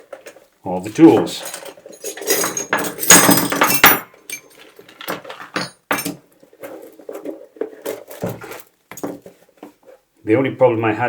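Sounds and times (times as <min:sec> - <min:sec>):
metal hand tools clattering: 0:00.9 - 0:06.2.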